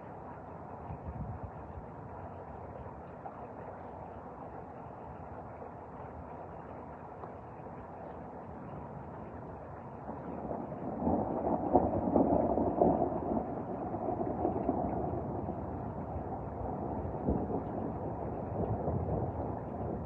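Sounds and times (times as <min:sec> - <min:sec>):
rolling thunder: 0:10.1 - 0:20.0.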